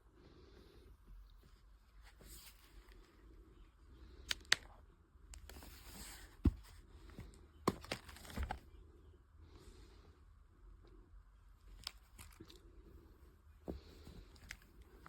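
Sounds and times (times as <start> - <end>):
handling rustling: 5.4 - 8.7.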